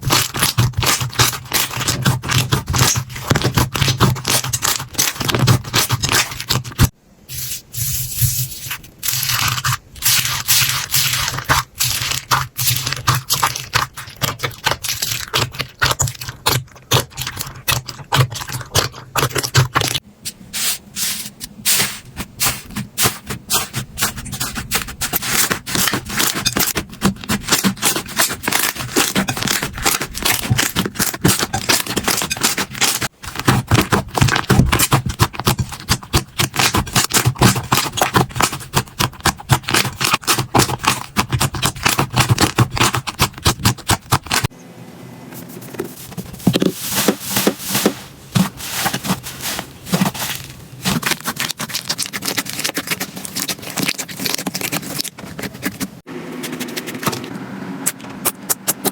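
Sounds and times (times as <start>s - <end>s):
slime crackling and popping: 9.0s - 20.0s, 23.0s - 44.5s, 46.5s - 55.8s.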